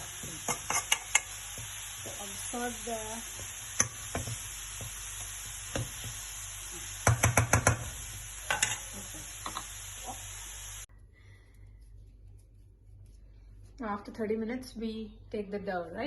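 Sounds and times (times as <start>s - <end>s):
filling sizzling in a frying pan: 0.0s - 10.9s
spatula knocking against a pan: 7.0s - 8.8s.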